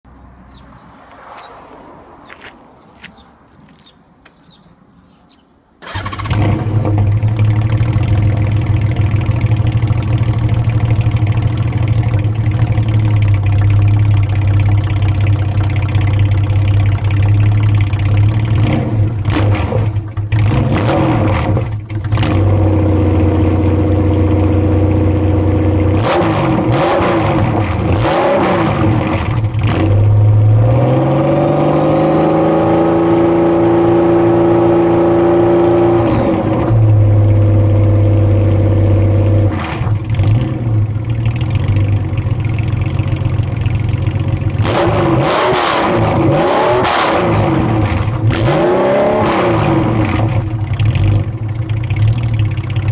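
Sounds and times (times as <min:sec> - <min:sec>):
engine throttle blips: 0:05.8 - 0:30.8
motorcycle engine idling: 0:07.0 - 0:18.6, 0:40.8 - 0:44.6, 0:50.5 - 0:52.9.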